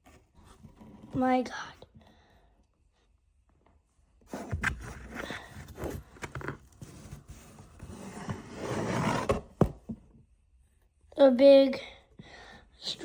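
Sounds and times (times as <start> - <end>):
packaging rustling and scraping: 4.3 - 9.6.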